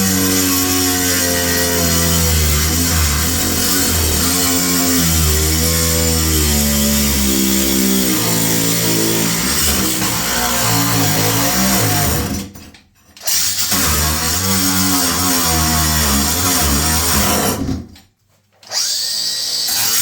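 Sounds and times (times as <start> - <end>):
power tool motor cutting: 0.0 - 12.3, 18.7 - 20.0.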